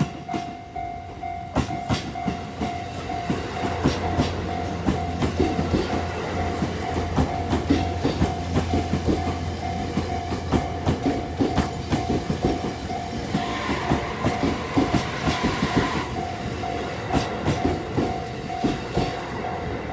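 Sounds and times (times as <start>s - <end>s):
crossing warning bell clanging: 0.0s - 19.9s
train wheels knocking over rail joints: 1.5s - 16.2s.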